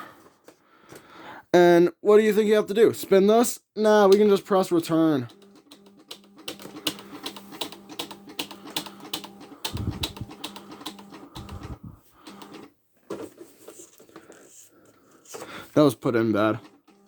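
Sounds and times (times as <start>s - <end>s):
typewriter motor hum: 5.3s - 12.7s.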